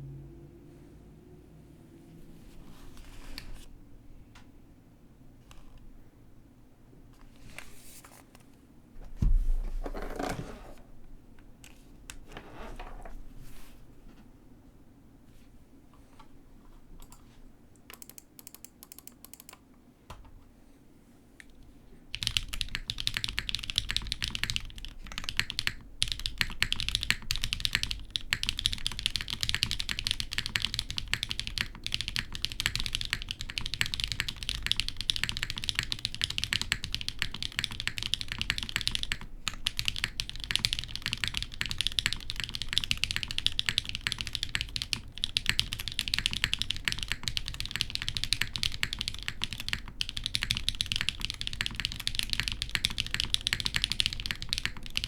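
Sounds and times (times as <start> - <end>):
typing on mechanical keyboard: 17.8 - 19.6, 22.1 - 55.0.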